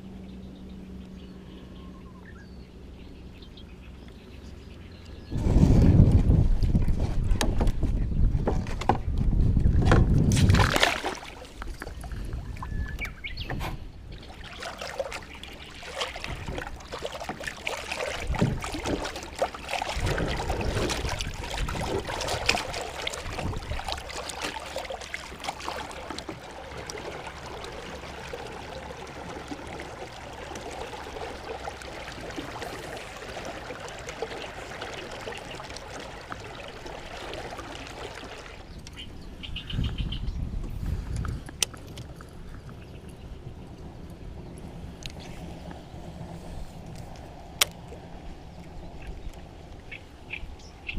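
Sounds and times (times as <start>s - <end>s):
water trickling and lapping: 0.0s - 50.9s
knocks on boat: 7.4s - 10.8s, 18.2s - 19.2s
splashes: 10.3s - 13.0s, 14.1s - 39.2s.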